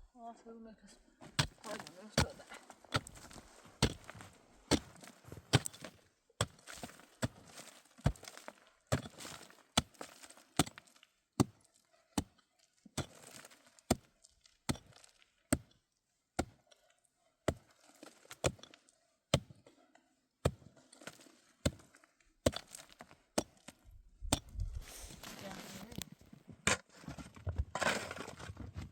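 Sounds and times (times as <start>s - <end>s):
hand tool chopping: 1.4s - 7.4s, 8.0s - 10.8s, 14.7s - 15.7s, 16.4s - 16.6s, 18.3s - 18.7s, 20.4s - 25.3s
short crunching rustle: 24.5s - 26.3s.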